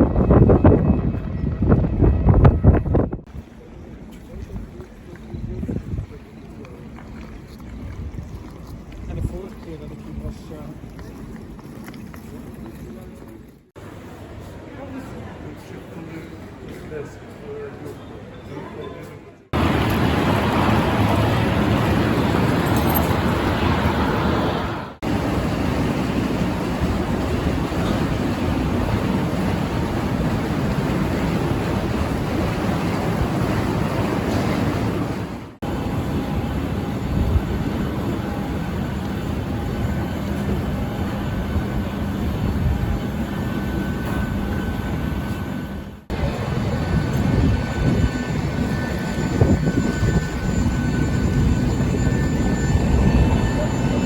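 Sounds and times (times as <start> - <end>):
loud rumbling of airport apron: 19.6 - 54.0.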